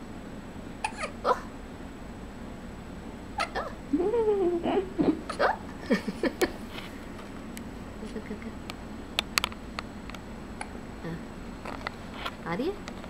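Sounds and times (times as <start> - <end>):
sharp hiccups: 0.8 - 1.5.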